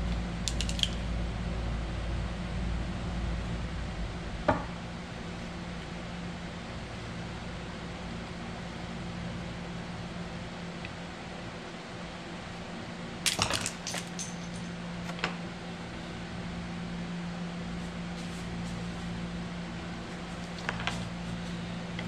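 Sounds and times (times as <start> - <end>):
steady low hum: 0.0 - 22.0
plastic parts clicking: 0.5 - 1.0.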